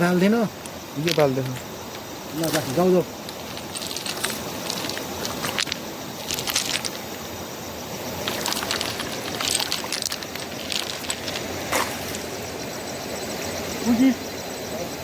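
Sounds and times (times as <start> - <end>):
river water running: 0.0 - 15.0
sharp splashes and knocks: 8.2 - 12.3.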